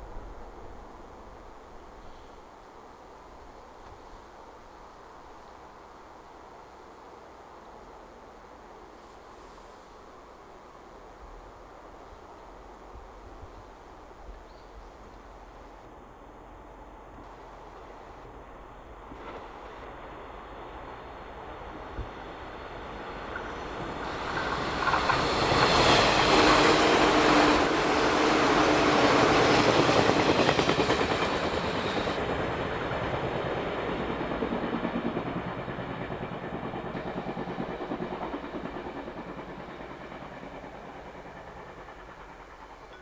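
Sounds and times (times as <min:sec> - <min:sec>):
passenger train passing: 0:15.0 - 0:43.0.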